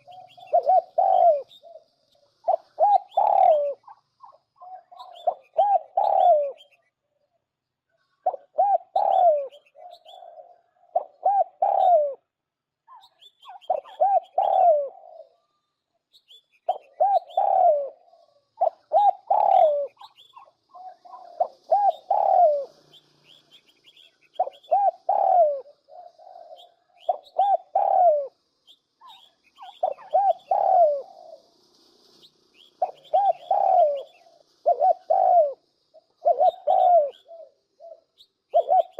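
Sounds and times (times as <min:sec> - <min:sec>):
dove cooing: 0:00.0 - 0:06.8, 0:08.2 - 0:12.3, 0:12.9 - 0:15.4, 0:16.7 - 0:28.4, 0:29.0 - 0:31.6, 0:32.6 - 0:38.9
small birds chirping faintly: 0:00.0 - 0:38.9.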